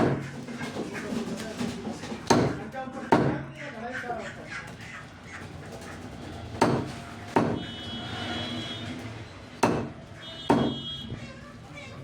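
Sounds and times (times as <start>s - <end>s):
knife chopping on cutting board: 2.3s - 3.4s, 6.6s - 7.6s.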